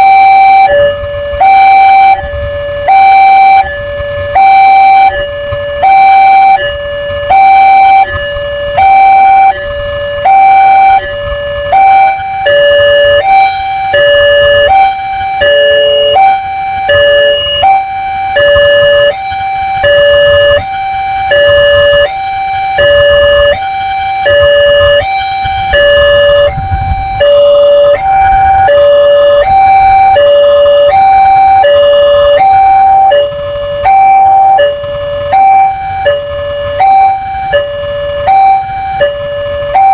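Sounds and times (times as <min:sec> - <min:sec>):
two-tone crossing alarm chime: 0:00.0 - 0:39.9
low rumble: 0:24.5 - 0:30.4.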